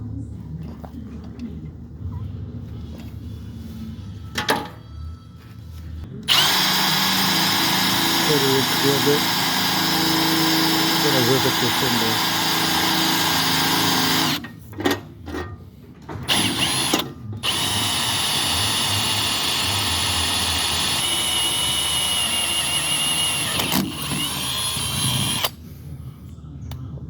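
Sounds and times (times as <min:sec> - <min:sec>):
power drill drilling into steel: 0:06.3 - 0:14.4, 0:16.3 - 0:25.6.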